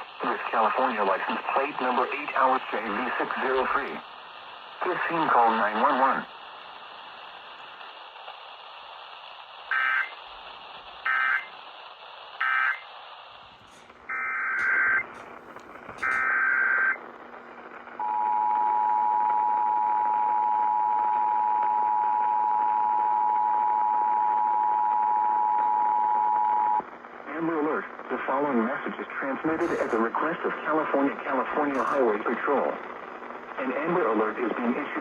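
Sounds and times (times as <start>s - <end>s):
radio hiss: 0.0s - 19.7s, 21.1s - 35.0s
screechy data bursts: 9.7s - 10.2s, 11.0s - 11.6s, 12.4s - 17.0s, 29.4s - 30.3s, 31.3s - 32.2s.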